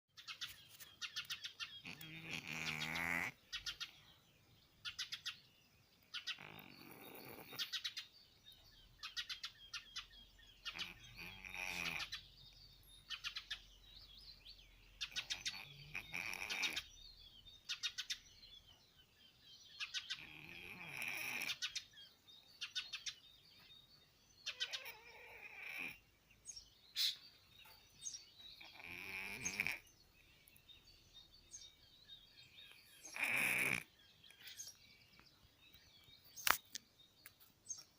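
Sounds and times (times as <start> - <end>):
cat snoring: 1.9 - 3.4, 6.4 - 7.6, 10.7 - 12.1, 15.5 - 16.8, 20.2 - 21.6, 24.7 - 26.0, 28.6 - 29.8, 33.1 - 33.9.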